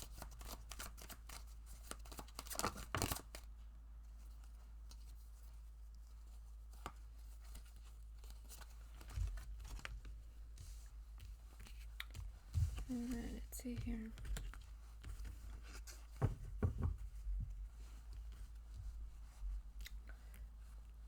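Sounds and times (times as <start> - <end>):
cards shuffling: 0.0 - 3.5
soft low thump: 16.2 - 17.8.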